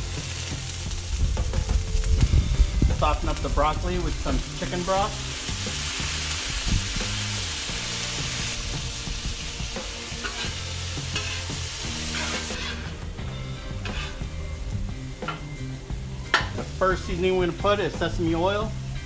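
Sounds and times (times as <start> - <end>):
broth sizzling on hot griddle: 0.0 - 19.0
spatula scraping griddle: 3.0 - 14.7.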